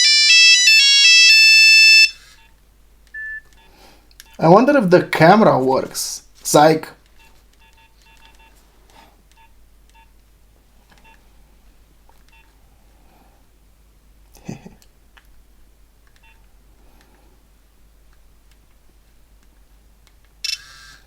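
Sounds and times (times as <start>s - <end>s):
phone keypad beeps: 3.2s - 4.4s, 7.2s - 8.5s.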